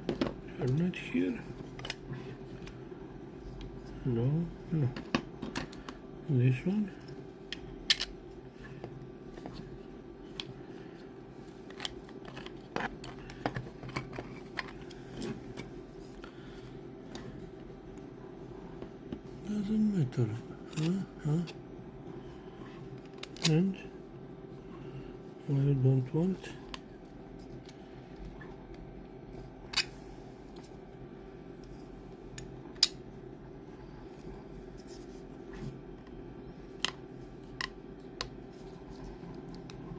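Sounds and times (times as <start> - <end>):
steady low hum: 0.0 - 39.9
plastic parts clicking and tapping: 7.5 - 8.2, 11.7 - 15.7.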